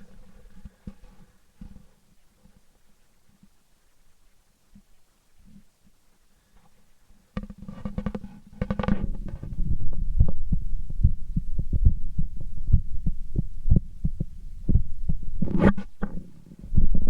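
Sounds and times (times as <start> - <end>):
scraping rustling noise: 7.4 - 9.7, 15.4 - 17.0
heartbeat through stethoscope: 9.1 - 17.0.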